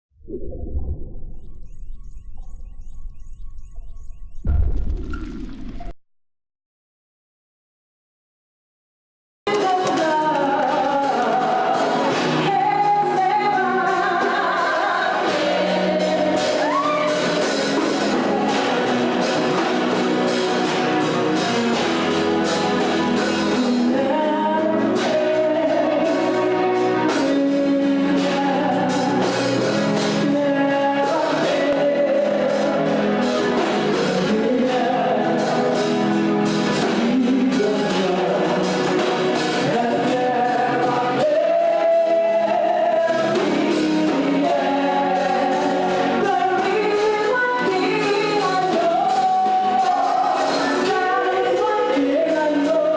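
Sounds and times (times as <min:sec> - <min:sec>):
person singing with accompaniment: 0:09.5 - 0:52.9.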